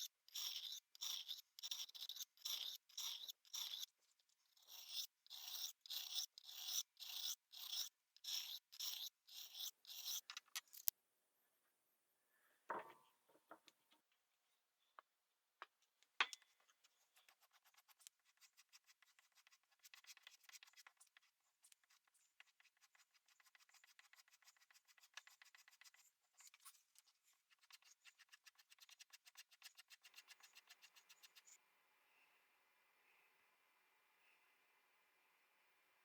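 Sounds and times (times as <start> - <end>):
knife scraping across sharpener: 0.0 - 4.0, 4.6 - 10.9.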